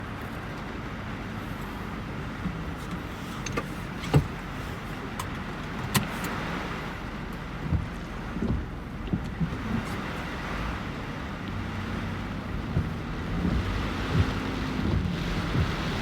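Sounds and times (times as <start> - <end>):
vehicle running noise: 0.0 - 16.0
sharp clicks and knocks: 2.4 - 4.4, 5.1 - 6.4, 7.6 - 10.0, 12.6 - 16.0.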